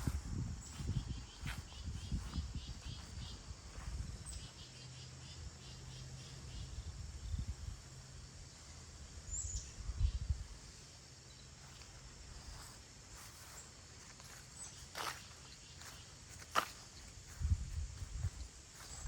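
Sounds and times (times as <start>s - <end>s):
insects: 0.0s - 19.0s
faint bird chirps: 0.6s - 7.5s, 9.3s - 10.5s.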